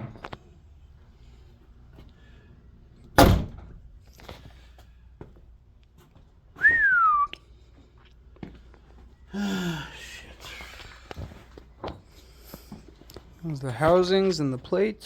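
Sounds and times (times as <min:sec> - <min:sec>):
heavy thunk: 0:03.2 - 0:03.7
short whistled note: 0:06.6 - 0:07.4.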